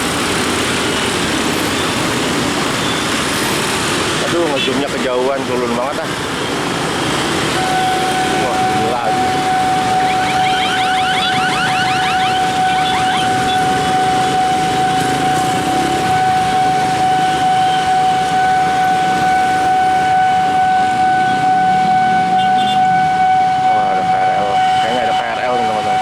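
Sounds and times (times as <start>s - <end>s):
traffic noise: 0.0s - 26.0s
level crossing alarm tone: 7.4s - 26.0s.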